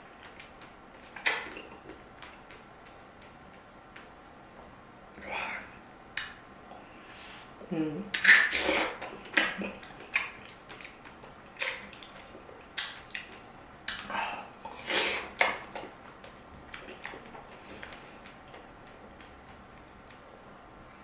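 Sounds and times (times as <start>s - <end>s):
wet chewing or slurping: 8.2s - 15.9s, 16.7s - 20.2s.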